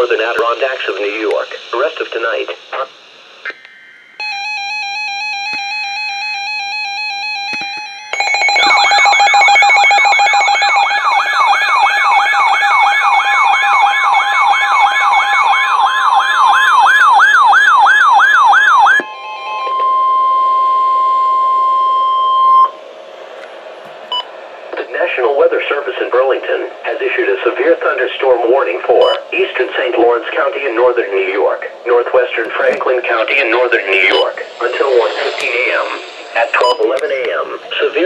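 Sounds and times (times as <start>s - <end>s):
stepping electronic tone: 3.5s - 15.7s, 26.1s - 38.0s
steady electronic alert tone: 4.2s - 12.3s, 28.2s - 37.0s
siren sweeping up and down: 4.2s - 22.8s.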